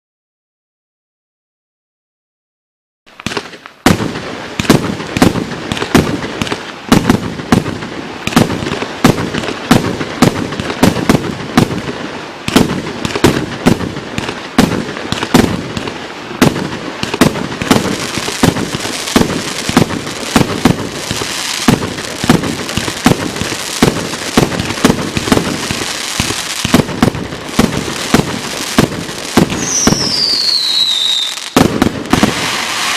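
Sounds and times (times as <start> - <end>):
firework bangs and crackles: 3.1 - 32.9
falling firework whistle: 28.8 - 32.9.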